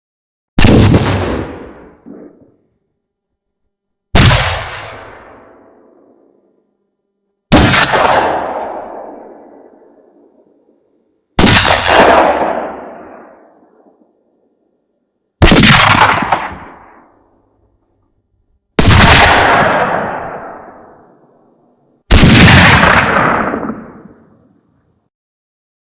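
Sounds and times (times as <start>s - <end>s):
rifle shots with echo: 0.6s - 2.6s, 4.2s - 6.2s, 7.5s - 10.6s, 11.4s - 14.1s, 15.4s - 17.4s, 18.8s - 21.4s, 22.1s - 24.6s.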